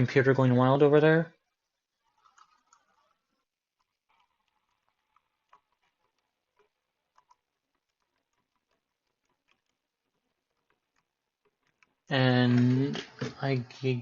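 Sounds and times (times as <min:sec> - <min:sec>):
computer clicks: 0:04.1 - 0:12.0.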